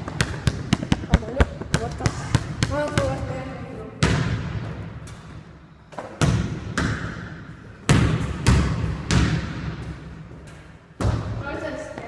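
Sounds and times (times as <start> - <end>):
basketball bouncing on hard floor: 0.0 - 3.3, 7.9 - 12.0.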